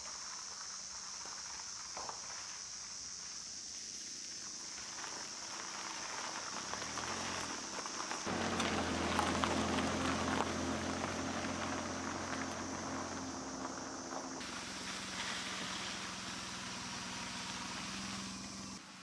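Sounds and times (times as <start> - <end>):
rain pattering: 6.2 - 17.6
low engine hum: 6.6 - 19.0.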